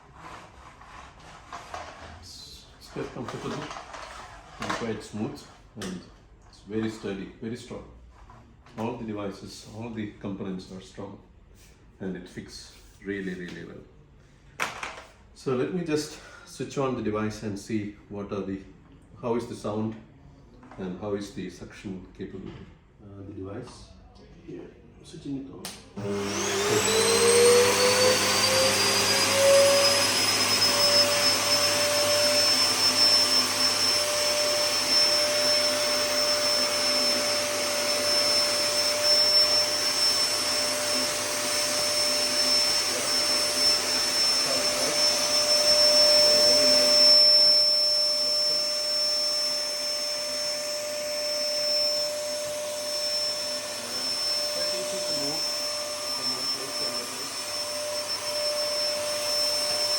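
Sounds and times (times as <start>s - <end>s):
vacuum cleaner motor whining: 25.8s - 59.9s.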